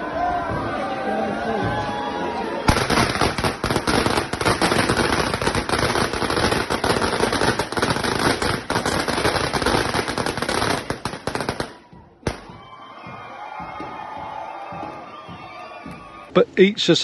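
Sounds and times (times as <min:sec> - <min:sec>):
firecracker bang: 0:02.7 - 0:12.6
firecrackers cracking: 0:02.7 - 0:12.6.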